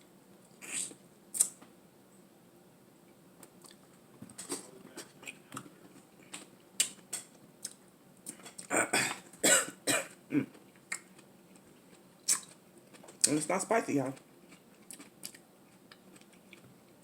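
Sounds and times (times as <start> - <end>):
mouth clicks and smacks of eating: 0.5 - 1.6, 7.6 - 8.7, 10.7 - 13.4, 14.5 - 16.7
person coughing: 8.7 - 10.5.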